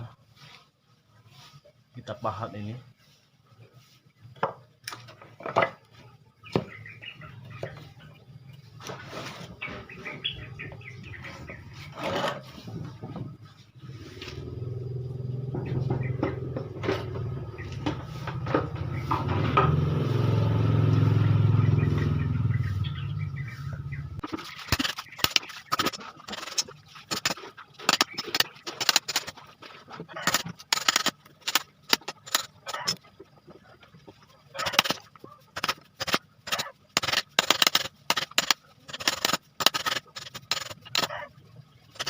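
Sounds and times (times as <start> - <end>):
low engine hum: 13.0 - 25.8.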